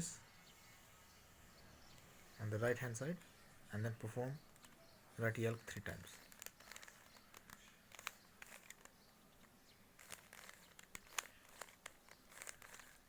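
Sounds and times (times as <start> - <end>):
puzzle cube layers clicking: 6.0 - 9.0, 10.0 - 13.0.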